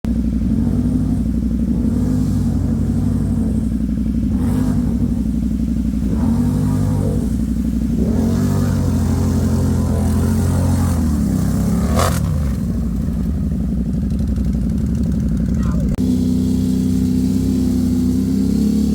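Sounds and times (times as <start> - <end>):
atv engine running: 0.0 - 18.9.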